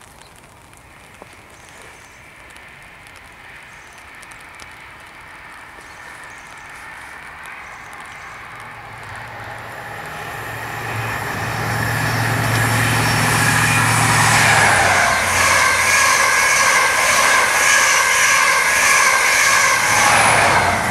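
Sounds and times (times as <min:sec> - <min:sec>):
train rushing noise: 0:06.0 - 0:20.9
low engine hum: 0:07.9 - 0:20.9.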